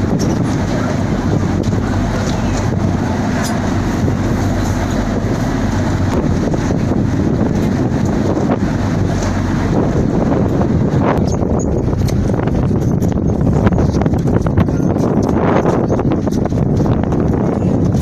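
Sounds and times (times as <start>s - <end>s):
boat engine humming: 0.0s - 18.0s
wind buffeting microphone: 0.0s - 18.0s.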